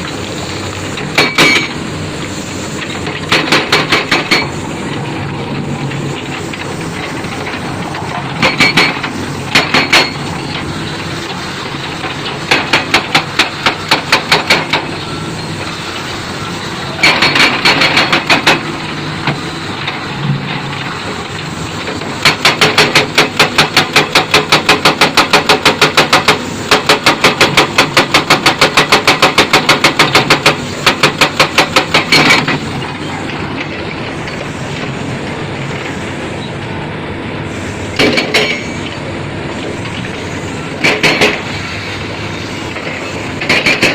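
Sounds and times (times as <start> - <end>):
diesel engine running: 0.0 - 43.9
hydraulic breaker hammering: 1.0 - 1.8, 2.8 - 4.6, 7.3 - 10.6, 12.0 - 14.9, 16.9 - 19.4, 21.9 - 32.7, 38.0 - 38.8, 40.8 - 41.5, 42.8 - 43.9.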